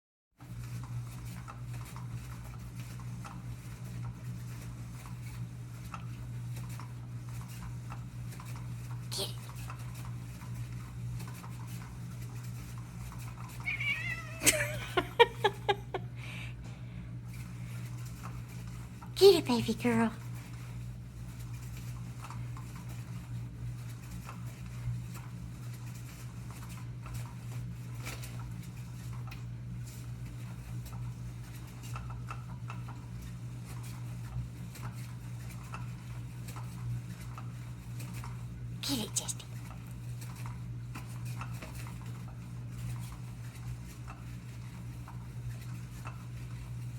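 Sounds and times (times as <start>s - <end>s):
steady low hum: 5.4s - 22.4s
cat chirping meows: 13.6s - 14.5s
cat meowing: 13.6s - 14.8s.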